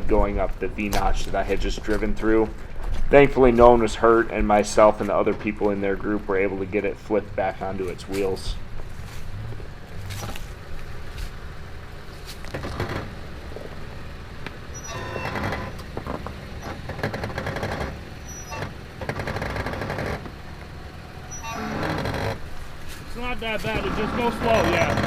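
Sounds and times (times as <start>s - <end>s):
vehicle engine running low: 0.0s - 25.0s
crunching and rattling: 7.6s - 20.9s, 21.5s - 25.0s.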